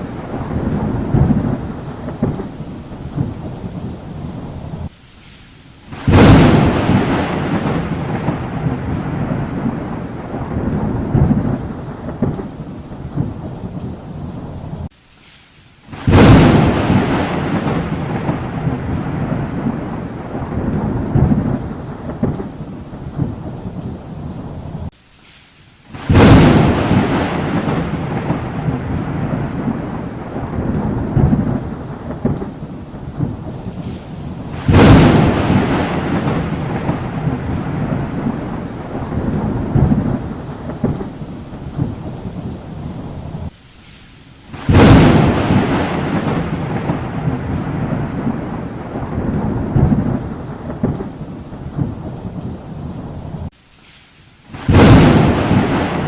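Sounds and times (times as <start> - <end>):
thunder cracks rumbling: 0.0 - 4.9, 5.9 - 14.9, 15.9 - 24.9, 26.0 - 43.5, 44.5 - 53.5, 54.6 - 56.0
rain: 0.0 - 56.0.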